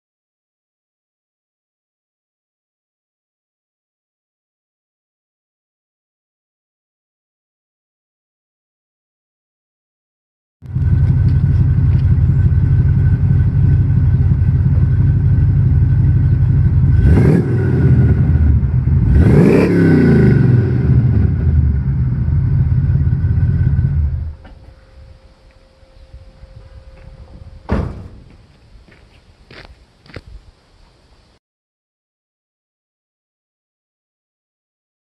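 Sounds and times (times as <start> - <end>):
car engine idling and revving: 10.6 - 24.8.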